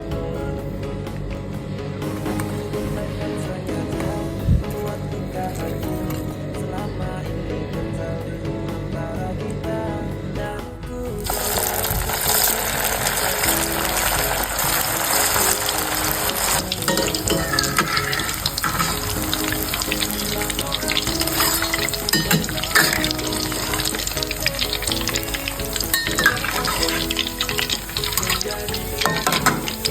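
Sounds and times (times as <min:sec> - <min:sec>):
background music: 0:00.0 - 0:29.9
food sizzling in frying oil: 0:11.2 - 0:29.9.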